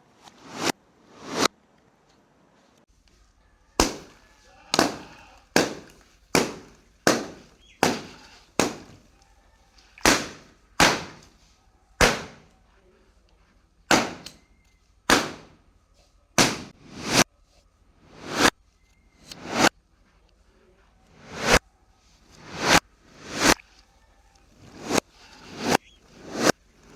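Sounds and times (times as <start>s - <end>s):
balloons popping: 3.8s - 9.2s, 9.8s - 11.4s, 12.0s - 12.5s, 13.9s - 14.4s, 15.1s - 15.6s, 16.4s - 17.2s, 22.3s - 23.8s, 24.5s - 26.9s.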